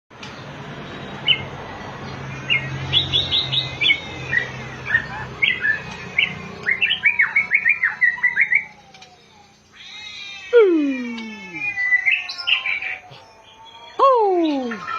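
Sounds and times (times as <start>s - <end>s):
bird singing whistled notes: 2.9s - 9.6s, 10.5s - 14.9s.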